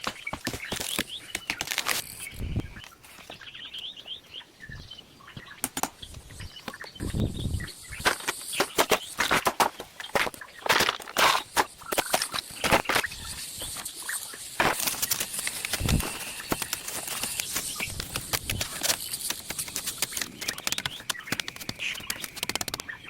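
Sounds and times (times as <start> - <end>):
bird chirps: 0.0 - 23.0
sharp clicks and knocks: 8.0 - 23.0.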